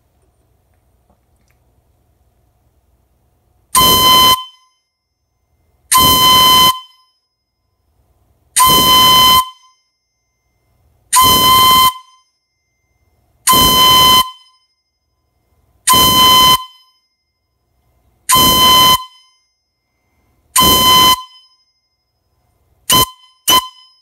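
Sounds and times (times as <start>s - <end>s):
whistle blasts: 3.8s - 7.3s, 8.6s - 15.0s, 15.9s - 17.2s, 18.3s - 21.8s, 22.9s - 24.0s.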